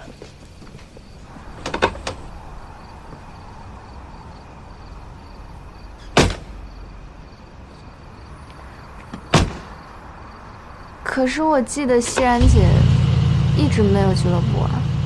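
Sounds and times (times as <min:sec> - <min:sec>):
door shutting with heavy thud: 0:06.2 - 0:06.6, 0:09.1 - 0:09.8
steady low hum: 0:12.2 - 0:15.0.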